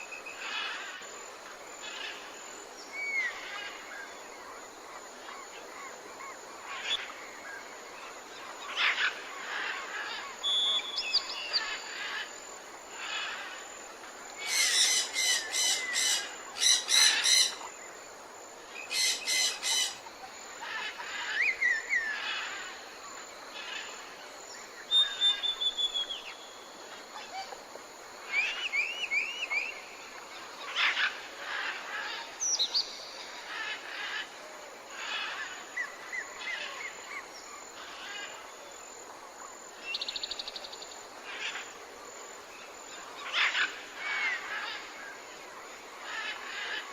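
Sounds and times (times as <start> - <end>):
steady background hiss: 0.0 - 46.9
harsh rattling bird calls: 5.2 - 13.7, 14.4 - 17.9, 18.7 - 27.6, 28.2 - 38.5, 42.9 - 45.2
birds calling: 18.8 - 20.1
bird whistles and chirps: 24.9 - 26.3.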